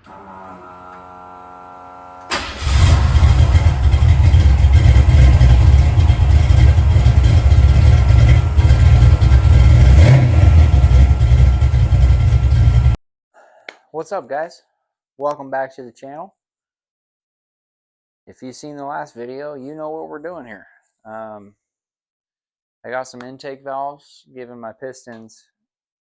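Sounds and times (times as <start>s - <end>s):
loud engine running: 0.0s - 13.0s.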